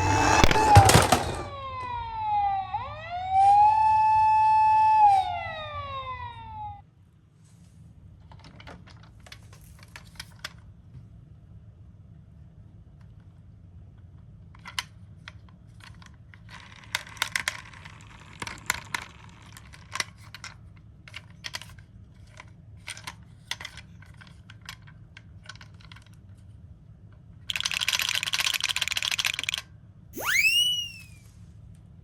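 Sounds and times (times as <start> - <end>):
short rising tone: 0.0 - 1.5, 30.2 - 31.2
toy cars clicking together: 8.3 - 10.6, 14.5 - 26.2, 27.5 - 29.7.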